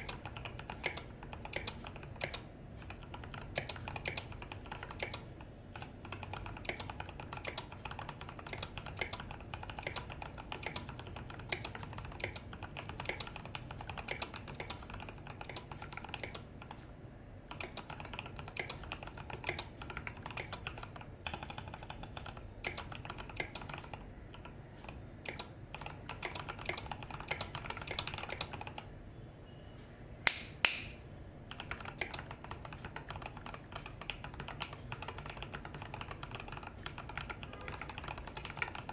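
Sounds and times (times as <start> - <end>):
fast typing on mechanical keyboard: 0.0 - 16.8, 17.5 - 28.9, 31.5 - 38.9
loud sharp clicks: 30.2 - 31.0.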